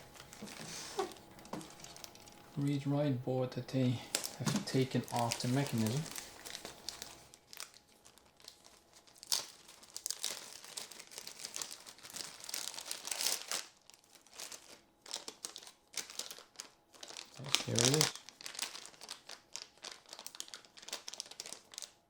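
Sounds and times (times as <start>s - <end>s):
plastic bags crinkling: 0.0s - 2.8s, 3.9s - 22.0s
sharp bag crackle: 4.1s - 21.9s.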